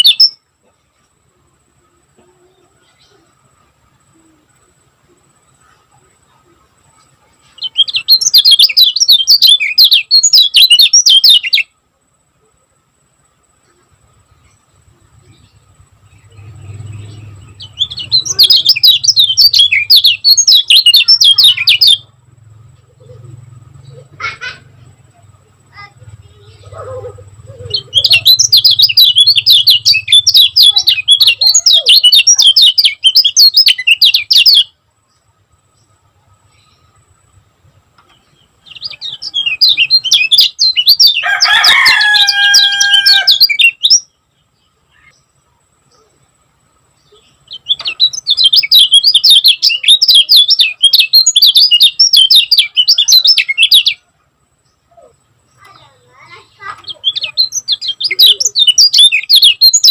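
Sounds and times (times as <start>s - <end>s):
songbird chirping: 0.0s - 59.9s
faint low hum: 21.5s - 31.3s
rooster crowing: 40.9s - 43.7s.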